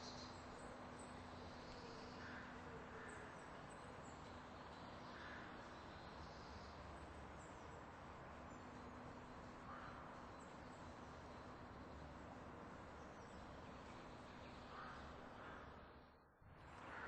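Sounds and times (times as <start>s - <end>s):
faint background hum: 0.0s - 17.0s.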